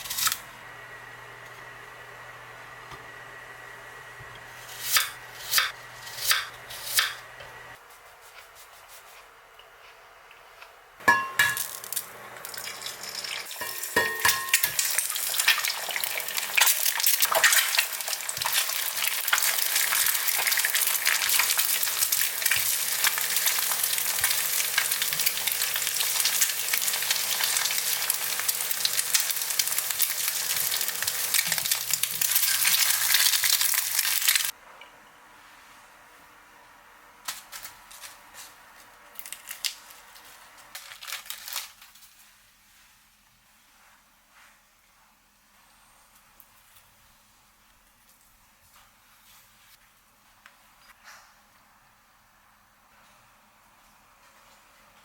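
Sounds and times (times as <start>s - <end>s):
food sizzling in a pan: 11.1s - 34.6s.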